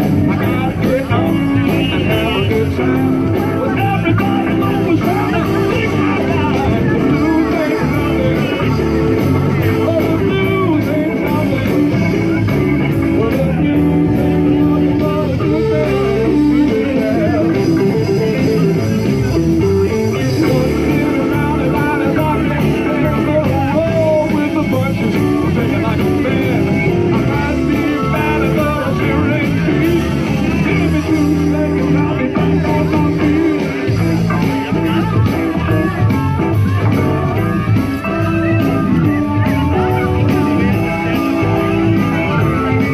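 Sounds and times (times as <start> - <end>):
electric guitar: 0.0 - 42.9
live blues band playing: 0.0 - 42.9
person singing: 0.0 - 42.9.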